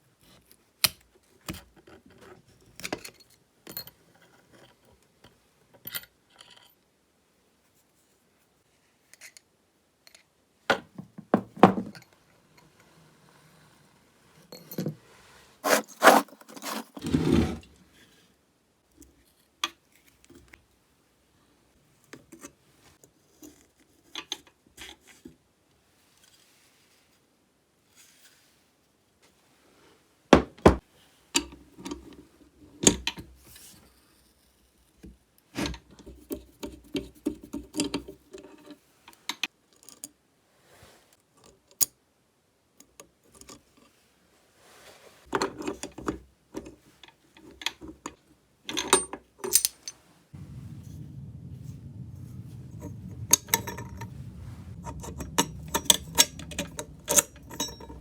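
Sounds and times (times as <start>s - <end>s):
steady low hum: 50.4s - 58.0s.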